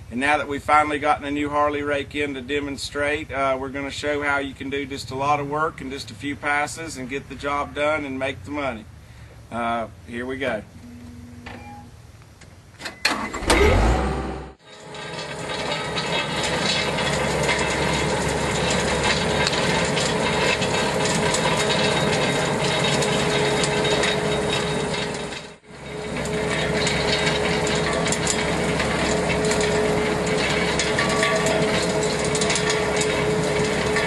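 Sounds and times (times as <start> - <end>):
rake drum grinding dirt and stones: 0.0 - 8.8, 14.6 - 34.0
machine engine: 13.1 - 34.0.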